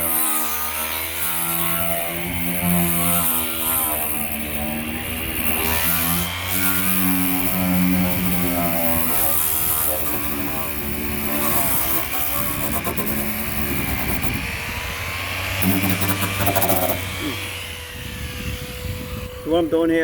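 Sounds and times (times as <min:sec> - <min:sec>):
power sander on metal: 0:00.0 - 0:20.0.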